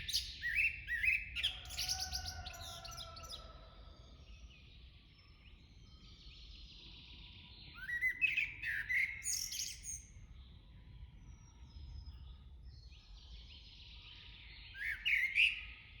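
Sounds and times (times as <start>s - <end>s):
faint chorus of bird calls: 0.0s - 16.0s.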